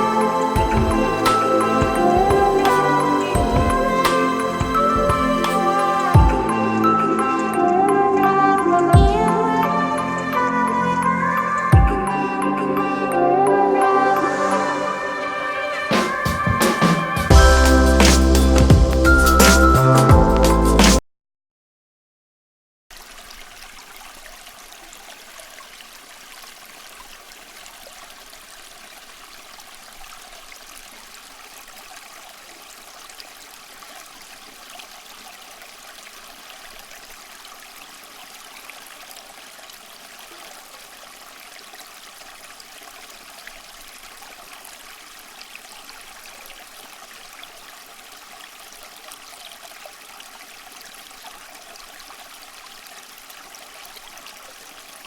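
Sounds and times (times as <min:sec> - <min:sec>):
water trickling in fountain: 0:00.0 - 0:08.4, 0:22.9 - 0:55.0.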